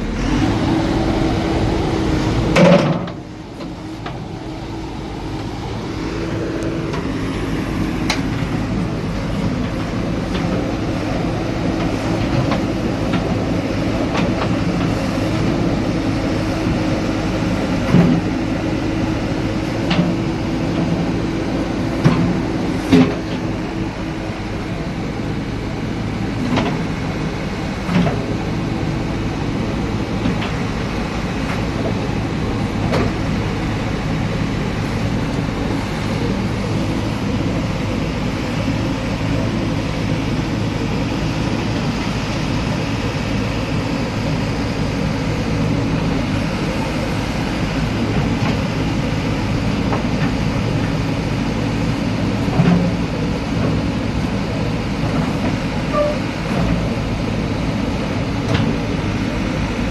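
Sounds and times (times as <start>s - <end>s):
diesel engine running: 0.0s - 59.9s
metal clanks and knocks: 2.5s - 4.2s.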